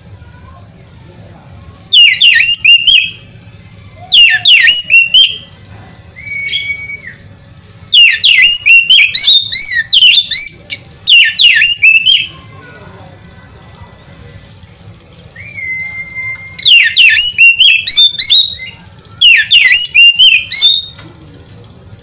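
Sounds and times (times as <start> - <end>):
bird whistling song: 1.9 - 3.3, 4.0 - 12.4, 15.3 - 21.0
held bird whistle: 1.9 - 3.3, 4.0 - 5.5, 6.2 - 7.3, 7.9 - 12.4, 15.3 - 21.0.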